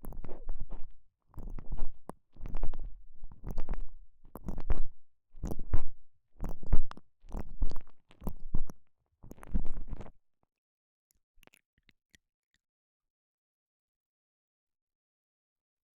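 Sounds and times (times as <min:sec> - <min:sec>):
rubber sleeve squishing: 0:00.0 - 0:08.7
crackly rubbing: 0:00.0 - 0:10.2.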